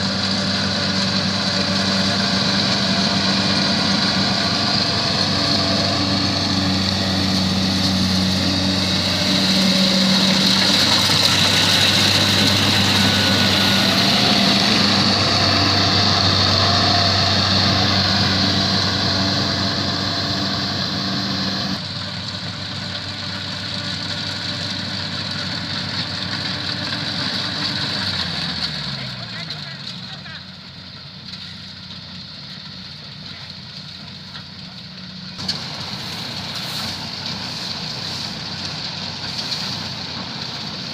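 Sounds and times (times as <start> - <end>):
high machinery whine: 0.0 - 23.8, 35.4 - 40.9
diesel engine drone: 0.0 - 40.9.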